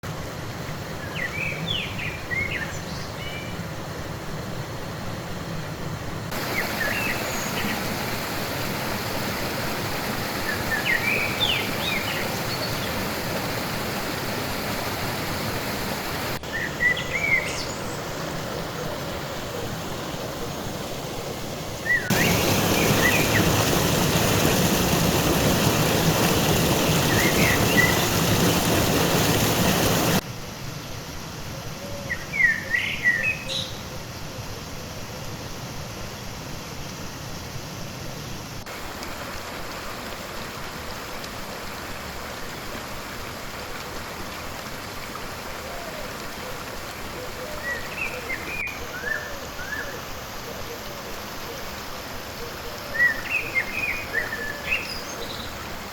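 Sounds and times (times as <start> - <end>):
flowing water rushing: 0.0 - 31.5, 37.9 - 55.9
small birds chirping: 21.9 - 25.0, 25.6 - 30.2.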